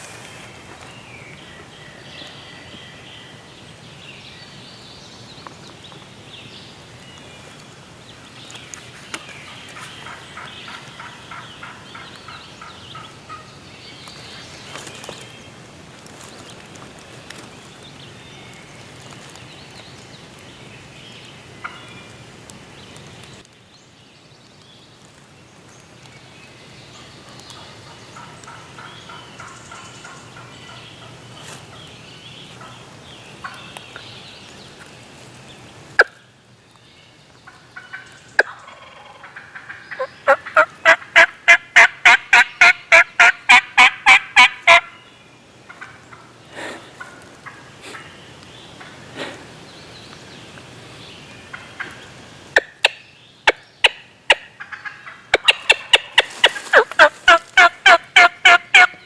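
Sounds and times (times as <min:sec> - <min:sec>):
turkey yelps: 0:37.8 - 0:44.9, 0:53.8 - 0:59.0.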